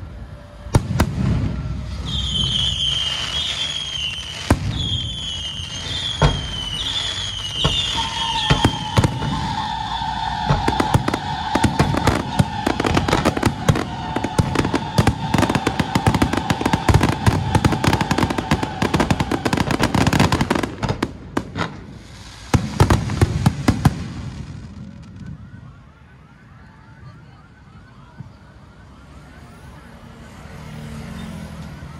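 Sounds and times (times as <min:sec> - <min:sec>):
firecrackers crackling: 0:00.4 - 0:26.0.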